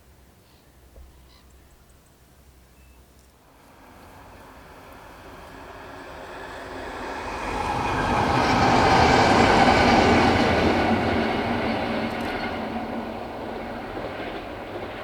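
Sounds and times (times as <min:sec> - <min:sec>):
steam train passing: 0:03.5 - 0:15.0.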